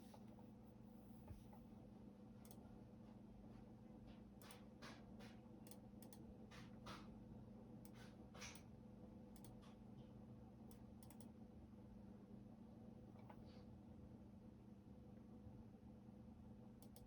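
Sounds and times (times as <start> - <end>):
faint keyboard typing: 4.4 - 7.0, 9.4 - 9.8, 10.7 - 11.4, 16.8 - 17.0.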